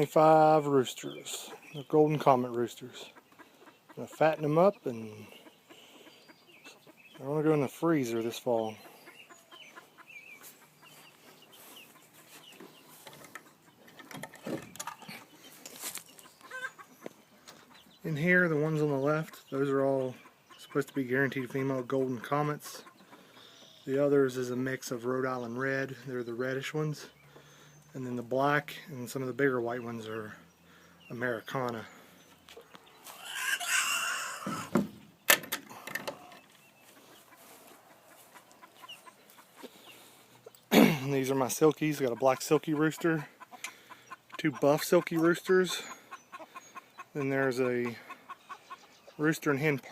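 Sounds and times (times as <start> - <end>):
young chickens clucking and cheeping: 0.0 - 49.9
knocks and rustles: 12.6 - 15.2.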